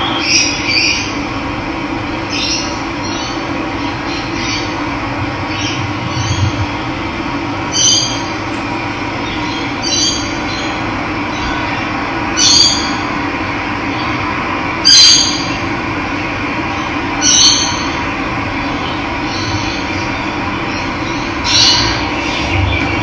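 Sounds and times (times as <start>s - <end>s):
bird short high call: 7.6s - 10.1s.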